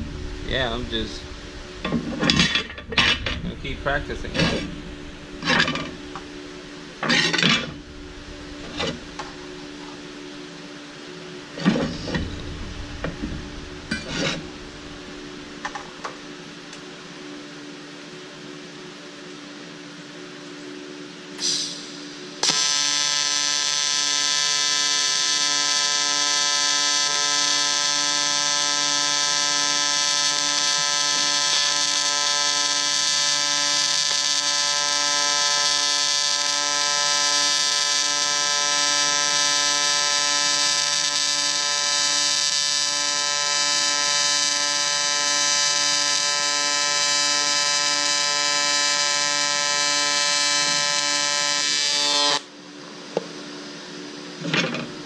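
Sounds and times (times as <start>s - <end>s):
welding arc buzzing: 0.0s - 10.6s, 11.4s - 16.3s, 21.7s - 52.5s
hiss: 21.4s - 22.6s.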